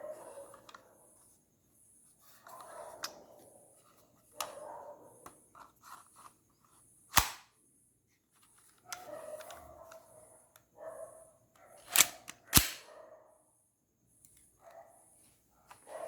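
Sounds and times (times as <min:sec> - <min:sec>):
airsoft pistol shot: 0:07.1 - 0:07.5, 0:11.9 - 0:12.8.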